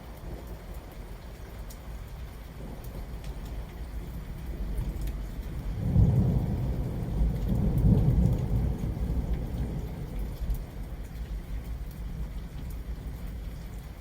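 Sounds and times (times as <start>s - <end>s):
steady rain: 0.0s - 14.0s
thunder rumbling: 4.5s - 10.6s.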